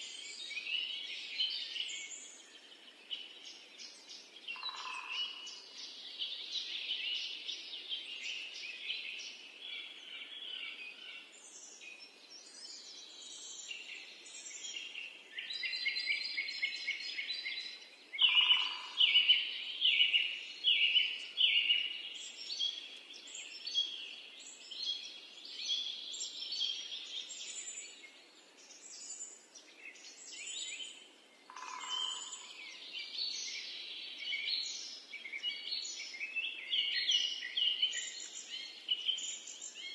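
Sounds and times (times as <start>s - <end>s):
birds chirping and singing: 0.0s - 39.9s.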